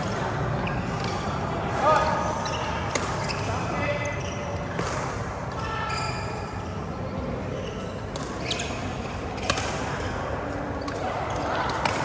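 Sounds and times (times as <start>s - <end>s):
sports hall background noise: 0.0s - 12.0s
shoes squeaking on court floor: 0.6s - 5.0s, 5.9s - 6.8s, 7.5s - 9.7s
racket hitting shuttlecock: 9.4s - 10.2s.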